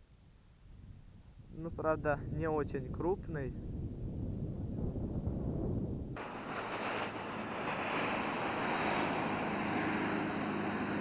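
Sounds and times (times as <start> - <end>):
wind buffeting microphone: 0.2 - 11.0
motorboat engine hum: 6.2 - 11.0
rushing water hiss: 6.2 - 11.0.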